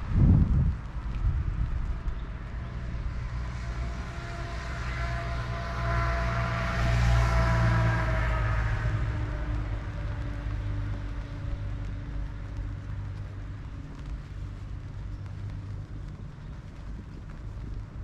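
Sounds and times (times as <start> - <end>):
street traffic rumble: 0.0 - 18.0
vehicle engine passing by: 1.9 - 14.7.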